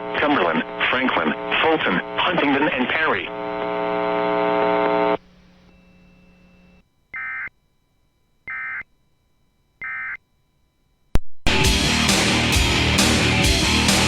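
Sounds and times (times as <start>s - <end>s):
buzzy data tone bursts: 0.0s - 7.6s, 8.4s - 8.9s, 9.8s - 10.2s
loud rock music: 11.5s - 14.0s.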